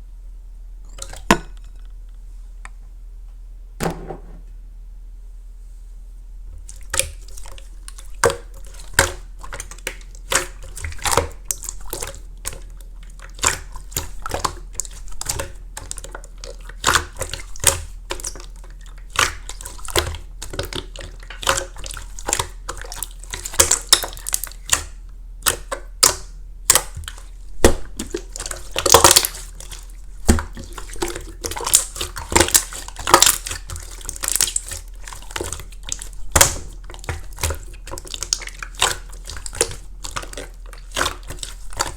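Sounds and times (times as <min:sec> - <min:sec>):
wet crackling: 0:26.7 - 0:41.9.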